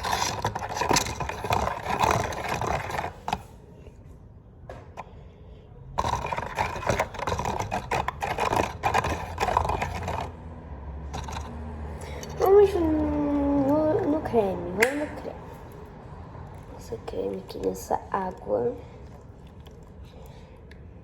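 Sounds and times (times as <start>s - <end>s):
utensil stirring slime: 0.0s - 3.9s, 6.0s - 10.4s, 11.1s - 15.8s.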